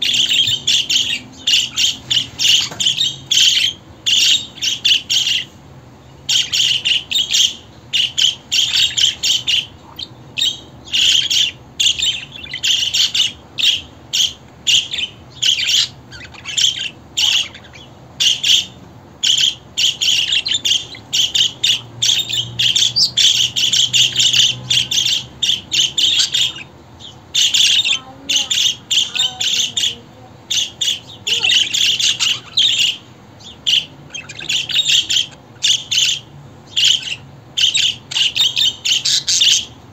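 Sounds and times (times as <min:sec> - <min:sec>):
budgerigars chattering and chirping: 0:00.0 - 0:39.9.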